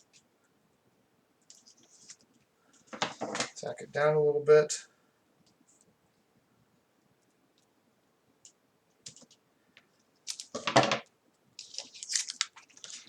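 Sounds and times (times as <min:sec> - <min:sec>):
crackly rustling: 0:00.0 - 0:03.6, 0:08.4 - 0:13.0.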